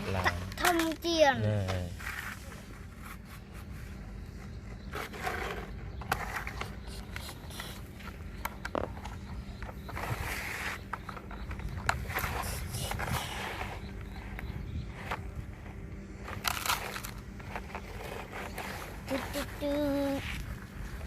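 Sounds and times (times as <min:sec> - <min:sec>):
steady low hum: 0:00.0 - 0:21.0
sand being scraped: 0:01.8 - 0:07.2, 0:09.9 - 0:11.0, 0:12.0 - 0:20.6.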